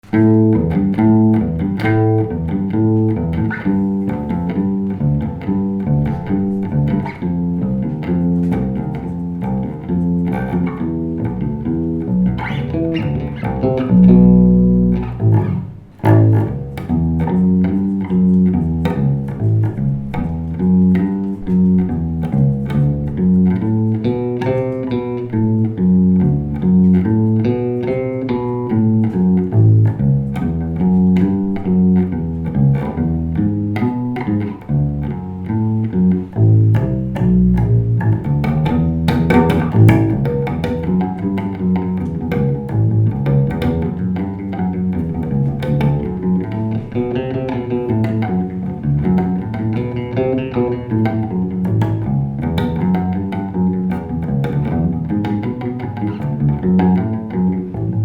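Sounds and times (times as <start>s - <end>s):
electric bass guitar plucked notes: 0.0s - 58.0s.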